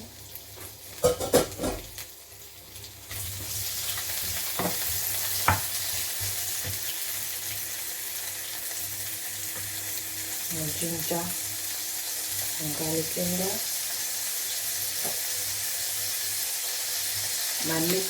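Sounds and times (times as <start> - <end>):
chicken sizzling in oil: 0.0 - 18.0
knocks in pan: 1.0 - 1.9, 5.4 - 5.7.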